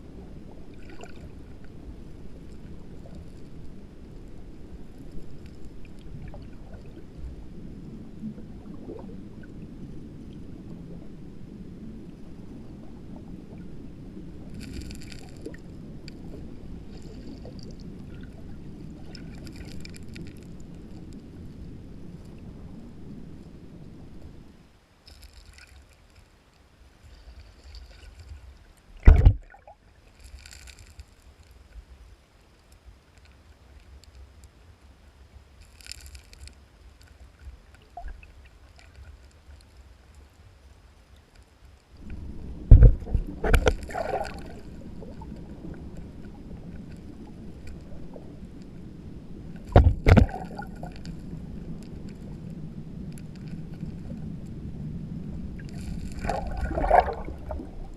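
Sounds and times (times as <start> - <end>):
water sloshing and gurgling: 0.0 - 11.2, 11.8 - 24.5, 25.1 - 31.2, 35.6 - 39.8, 42.0 - 57.9
loud thumps: 29.0 - 29.4.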